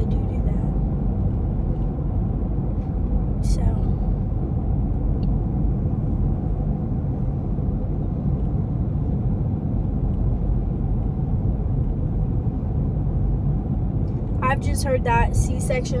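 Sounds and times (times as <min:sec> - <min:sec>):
car cabin rumble: 0:00.0 - 0:12.3, 0:13.2 - 0:16.0.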